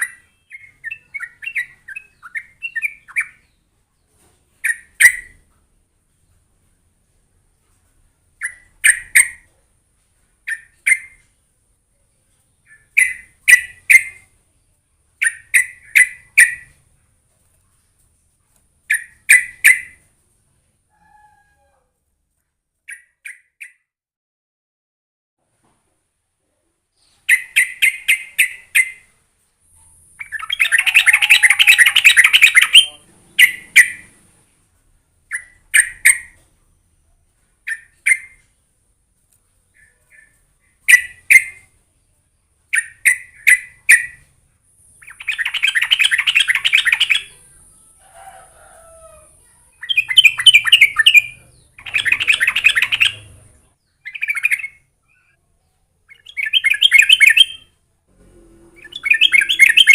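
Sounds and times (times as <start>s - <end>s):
bird bubbly chirps and chattering: 45.0s - 47.3s, 49.8s - 53.4s.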